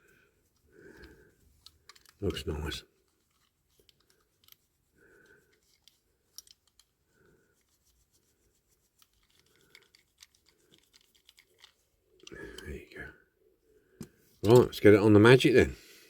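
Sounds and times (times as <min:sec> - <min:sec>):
polishing rag rubbing: 0:07.0 - 0:09.4.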